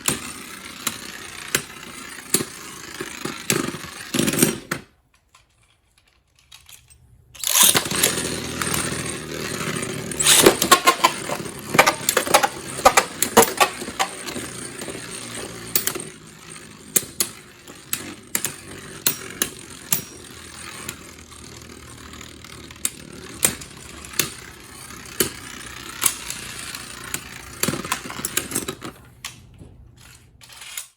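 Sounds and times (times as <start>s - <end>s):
spinning tops whirring: 0.0s - 4.6s, 7.4s - 28.9s
spinning tops clacking together: 6.4s - 29.0s.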